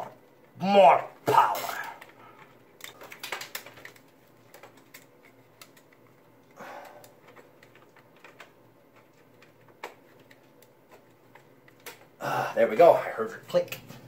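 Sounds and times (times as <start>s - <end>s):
cable rustle: 1.5s - 12.2s.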